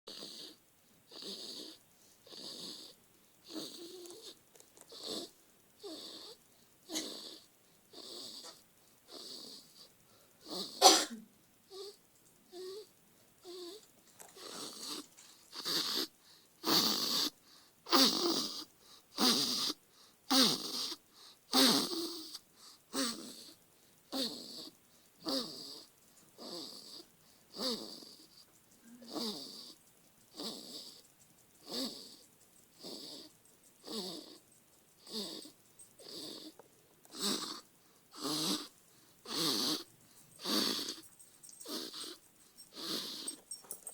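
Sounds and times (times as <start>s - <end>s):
baby snoring: 0.1s - 11.0s, 11.7s - 43.4s.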